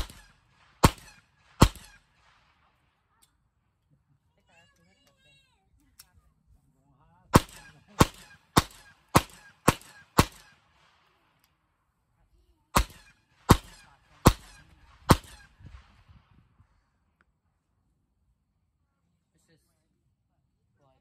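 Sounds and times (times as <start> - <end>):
gunshots with echo: 0.0 - 2.8, 7.3 - 11.0, 12.8 - 16.0.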